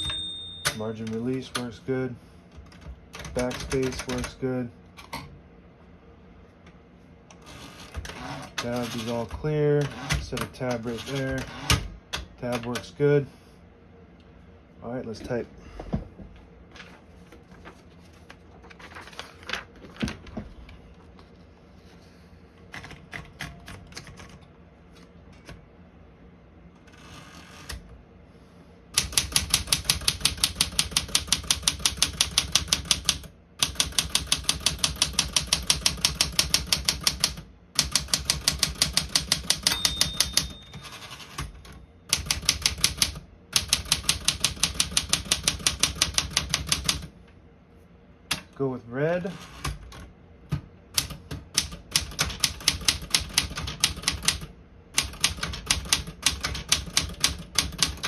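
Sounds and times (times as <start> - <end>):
typewriter bell ringing: 0.0 - 1.3, 39.1 - 41.5
manual typewriter keystrokes: 2.6 - 4.4, 7.8 - 12.9, 22.7 - 24.4, 29.0 - 47.1, 50.9 - 58.0.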